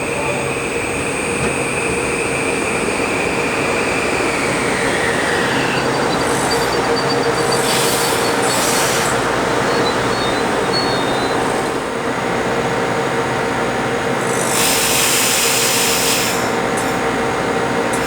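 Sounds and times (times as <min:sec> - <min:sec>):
high whine gliding down: 0:00.0 - 0:13.4
train rushing past: 0:00.0 - 0:18.0.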